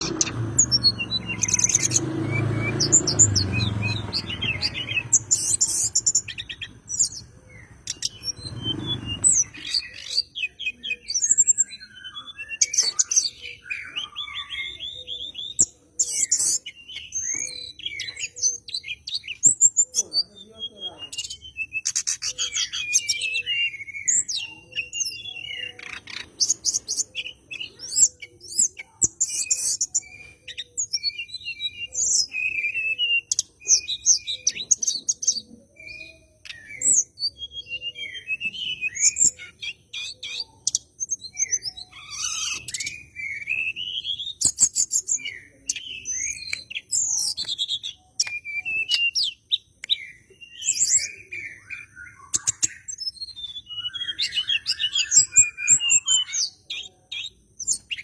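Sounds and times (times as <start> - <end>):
songbird singing: 0.0 - 58.0.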